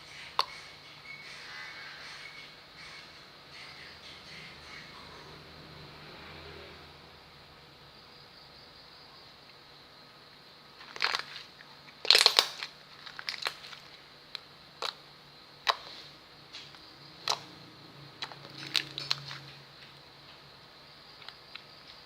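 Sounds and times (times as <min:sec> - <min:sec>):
slime popping and crackling: 0:12.0 - 0:13.9.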